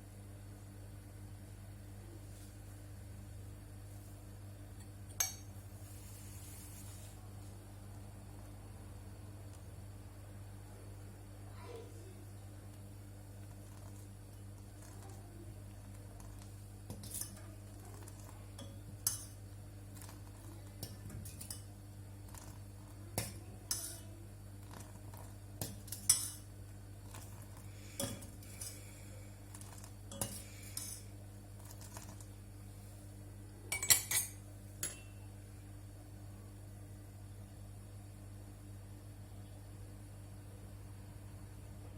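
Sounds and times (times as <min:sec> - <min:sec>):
steady low hum: 0:00.0 - 0:41.9
utensils clinking against dishes: 0:18.6 - 0:19.4, 0:23.2 - 0:24.1, 0:29.7 - 0:31.1, 0:33.7 - 0:35.2.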